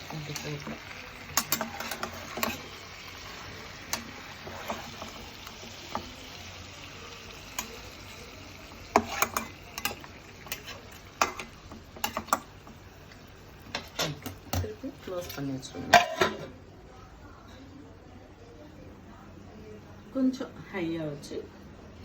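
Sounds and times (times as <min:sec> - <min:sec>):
chicken sizzling in a pan: 0:00.0 - 0:16.4.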